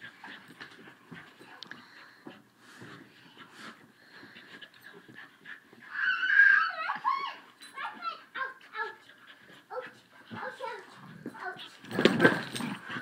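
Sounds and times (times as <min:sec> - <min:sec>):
dog high whining cry: 0:05.8 - 0:07.4
dog whimpers and yips: 0:05.8 - 0:07.4.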